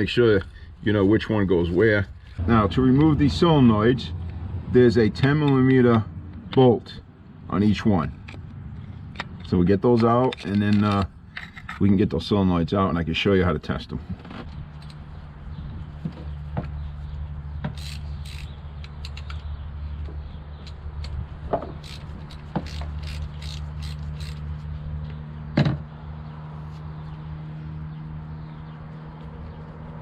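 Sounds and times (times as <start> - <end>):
steady low hum: 1.2 - 10.0
ratchet wrench clicking: 17.7 - 19.4, 21.8 - 24.5.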